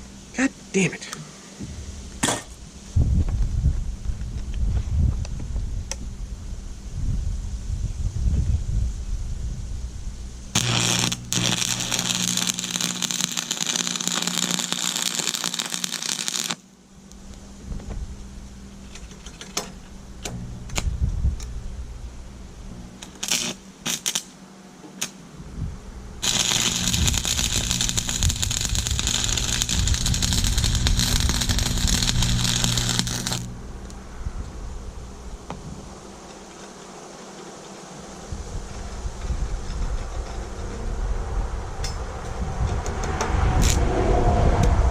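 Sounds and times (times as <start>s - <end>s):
welder low hum: 0.0s - 44.9s
welding arc crackling: 10.5s - 17.4s, 22.6s - 24.4s, 26.2s - 34.0s, 43.6s - 43.8s.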